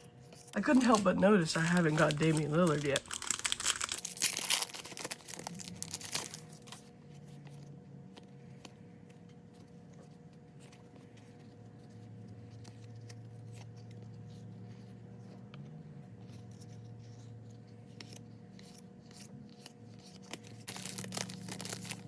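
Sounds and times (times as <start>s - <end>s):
cards clicking and rustling: 0.3s - 6.9s, 17.9s - 22.0s
card pack wrapper crinkling: 0.4s - 6.9s, 20.2s - 22.0s.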